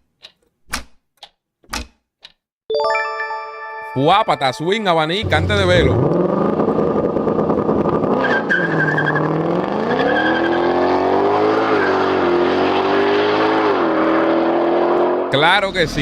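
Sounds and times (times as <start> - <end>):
tires squealing: 5.2 - 14.1
sports car engine accelerating: 5.2 - 16.0.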